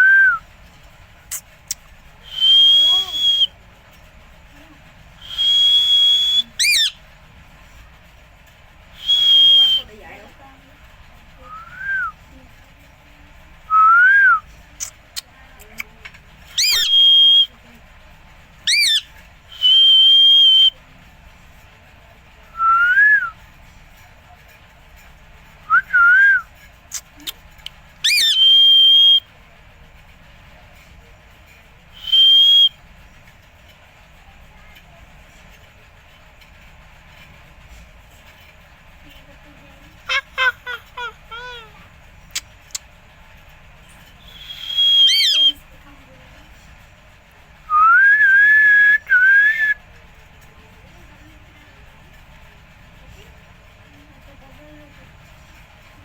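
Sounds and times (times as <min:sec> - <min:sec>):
parrot whistling: 0:00.0 - 0:00.4, 0:02.2 - 0:03.5, 0:05.2 - 0:07.0, 0:09.0 - 0:09.9, 0:11.4 - 0:12.1, 0:13.7 - 0:14.9, 0:16.5 - 0:17.5, 0:18.7 - 0:20.8, 0:22.6 - 0:23.4, 0:25.7 - 0:27.2, 0:28.0 - 0:29.3, 0:31.9 - 0:32.7, 0:40.1 - 0:42.8, 0:44.2 - 0:45.6, 0:47.7 - 0:49.8
parrot squawk: 0:06.3 - 0:07.0, 0:16.5 - 0:17.4, 0:18.7 - 0:20.7, 0:28.0 - 0:29.2, 0:40.1 - 0:42.8, 0:44.3 - 0:45.5.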